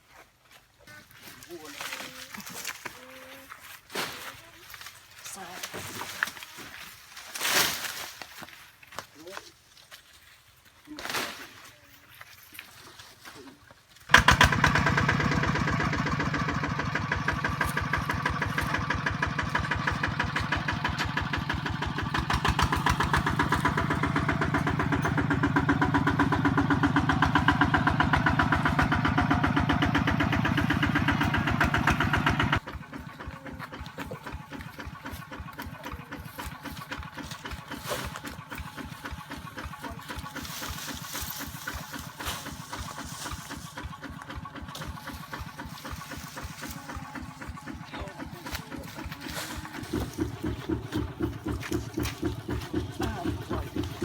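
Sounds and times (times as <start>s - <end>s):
diesel engine running: 14.1s - 54.0s.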